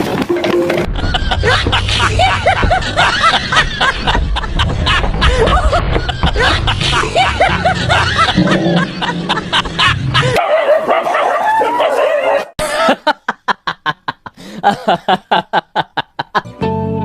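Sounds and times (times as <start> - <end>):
dog barking: 10.4 - 12.5.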